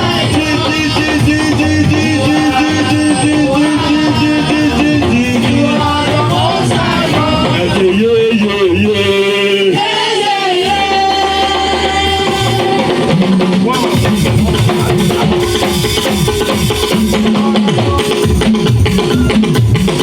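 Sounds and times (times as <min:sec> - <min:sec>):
person singing long notes: 0:00.0 - 0:13.1
band with drums: 0:00.0 - 0:20.0.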